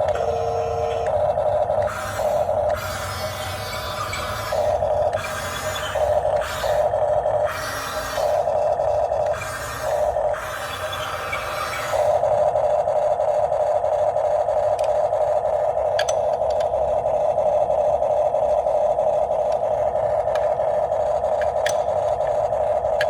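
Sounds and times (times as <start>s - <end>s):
electric motor whirring: 0.0s - 12.7s
sharp clicks and ticks: 14.7s - 15.0s, 21.4s - 22.4s.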